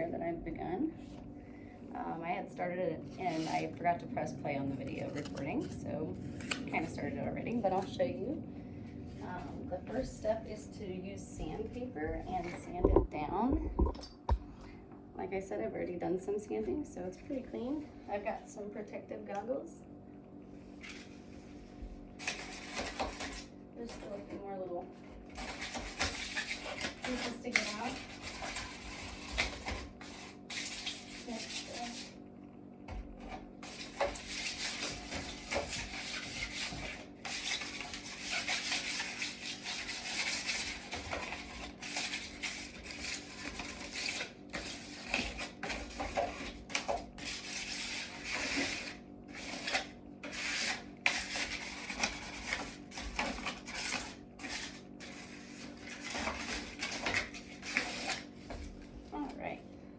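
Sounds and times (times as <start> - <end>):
sandpaper rubbing on wood: 25.4 - 32.1, 33.6 - 45.8.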